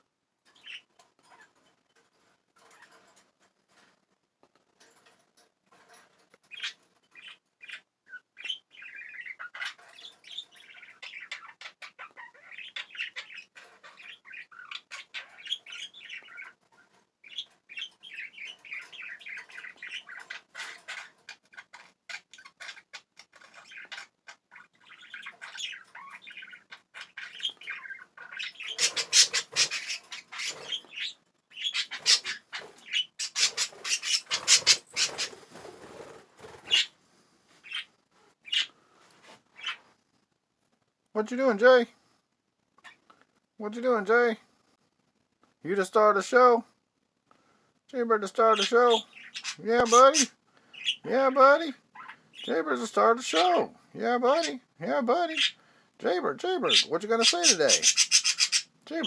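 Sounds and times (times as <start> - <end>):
budgies chattering and warbling: 0.5 - 1.6, 5.8 - 37.0, 37.6 - 38.8, 39.4 - 39.8, 48.2 - 59.0.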